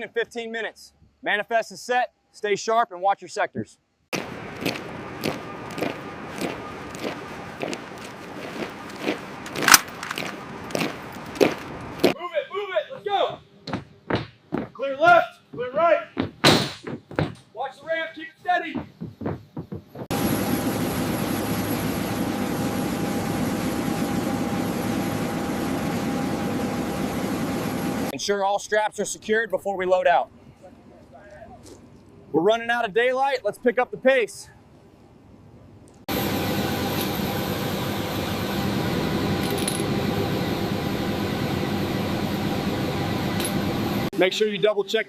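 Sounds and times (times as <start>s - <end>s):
aircraft engines running: 4.2s - 12.2s, 20.0s - 28.2s, 36.1s - 44.4s.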